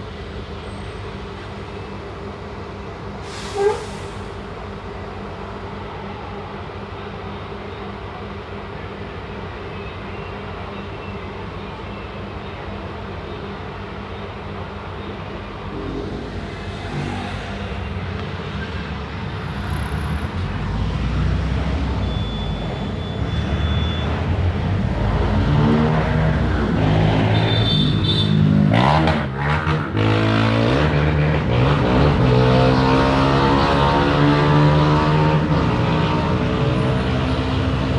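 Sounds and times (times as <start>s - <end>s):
diesel engine accelerating: 14.5s - 22.8s.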